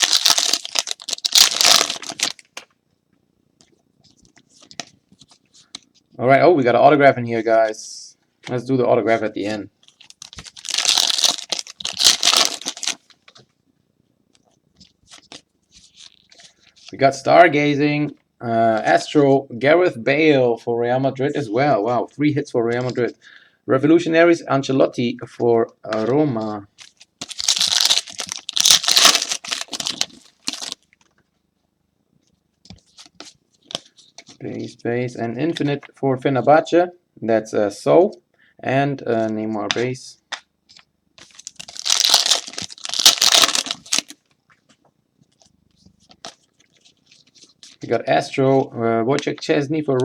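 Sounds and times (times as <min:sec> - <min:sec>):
trading cards rustling: 0:00.0 - 0:02.6, 0:09.4 - 0:13.4, 0:25.9 - 0:30.8, 0:40.7 - 0:48.0
wrapper crinkling: 0:00.0 - 0:02.6, 0:09.8 - 0:13.4, 0:26.8 - 0:31.0, 0:41.2 - 0:47.9
cards being handled: 0:32.6 - 0:34.8, 0:39.7 - 0:47.9.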